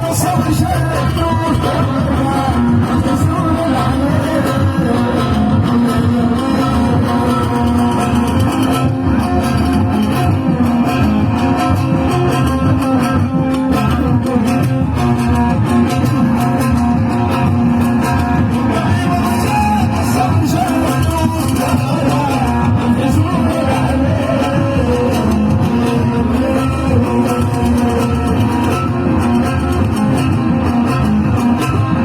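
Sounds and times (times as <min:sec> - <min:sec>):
person singing: 0:00.0 - 0:08.9, 0:18.4 - 0:29.0
live band with plucked strings: 0:00.0 - 0:32.0.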